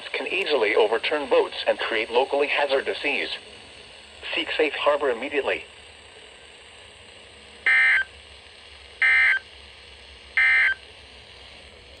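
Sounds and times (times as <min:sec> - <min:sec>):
steady radio hiss: 0:00.0 - 0:12.0
screeching data tone bursts: 0:07.7 - 0:08.1, 0:09.0 - 0:09.4, 0:10.4 - 0:10.8.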